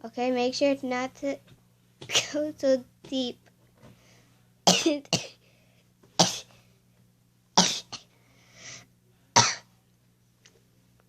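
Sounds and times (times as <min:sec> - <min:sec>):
child sneezing: 0:02.1 - 0:02.4, 0:04.7 - 0:05.4, 0:06.2 - 0:06.5, 0:07.6 - 0:08.1.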